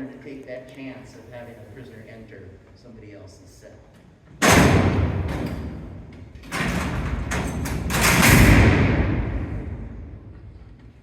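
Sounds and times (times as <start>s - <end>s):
cell doors sliding: 4.3s - 10.8s
loud clanging bang: 4.4s - 5.9s, 6.5s - 10.4s
clatter of knocks: 4.4s - 9.0s.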